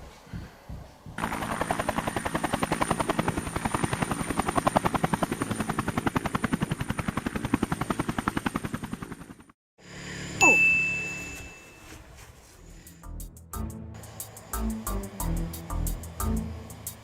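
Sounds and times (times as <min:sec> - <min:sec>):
helicopter rotor chopping: 0:01.2 - 0:10.4
thin high whine: 0:09.8 - 0:13.0.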